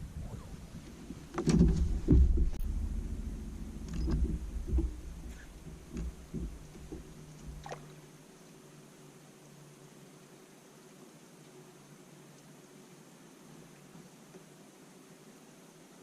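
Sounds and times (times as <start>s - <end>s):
low rumble: 0.0s - 7.9s
knocks and bumps in a boat: 0.3s - 7.9s.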